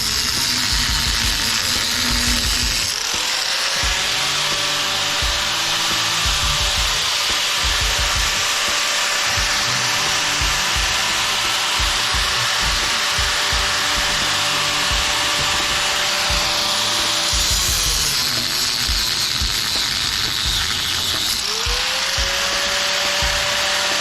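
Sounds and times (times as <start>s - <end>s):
power tool cutting metal: 0.0s - 24.0s.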